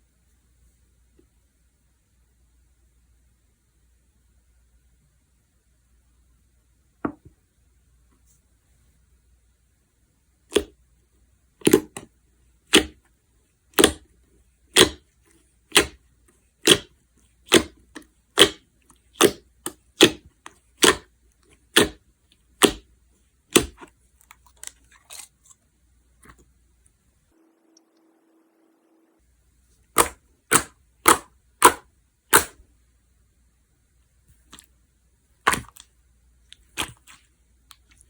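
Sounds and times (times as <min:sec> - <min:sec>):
slime squished by hand: 0:13.8 - 0:14.0, 0:14.7 - 0:15.0, 0:15.7 - 0:16.0, 0:16.6 - 0:16.9, 0:17.5 - 0:17.8, 0:18.4 - 0:20.2, 0:20.8 - 0:21.1, 0:21.7 - 0:22.0, 0:22.6 - 0:22.8, 0:23.5 - 0:23.9, 0:30.0 - 0:32.6.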